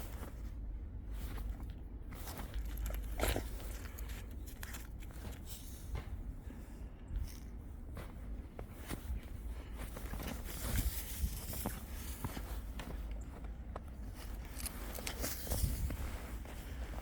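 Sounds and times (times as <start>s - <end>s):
scuffing footsteps: 0.0s - 6.4s, 7.1s - 17.0s.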